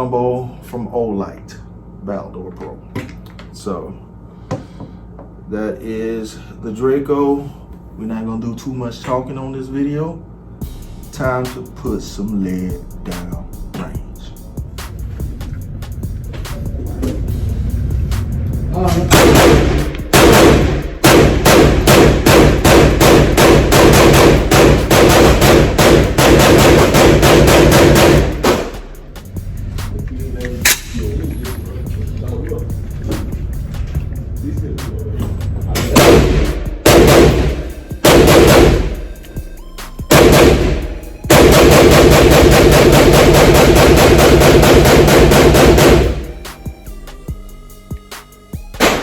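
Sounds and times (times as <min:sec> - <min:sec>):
background music: 0:10.6 - 0:49.0
pistol gunfire: 0:19.1 - 0:28.8, 0:30.6 - 0:31.0, 0:35.9 - 0:39.1, 0:40.1 - 0:46.4, 0:48.8 - 0:49.0.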